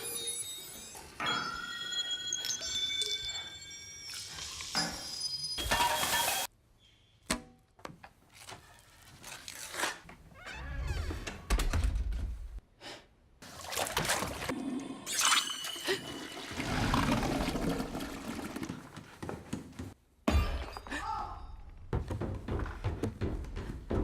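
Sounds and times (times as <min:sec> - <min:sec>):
pouring or trickling liquid: 0:14.6 - 0:18.8.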